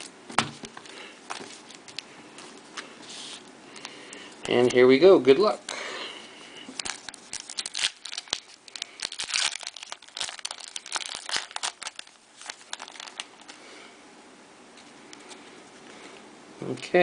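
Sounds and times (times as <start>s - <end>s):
wrapper tearing and crinkling: 6.8s - 13.6s.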